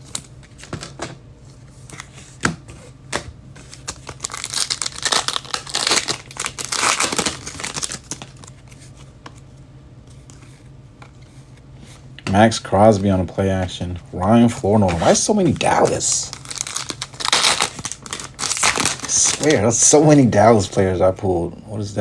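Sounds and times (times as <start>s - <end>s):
wrapper tearing and crinkling: 3.6s - 8.6s, 15.0s - 19.9s.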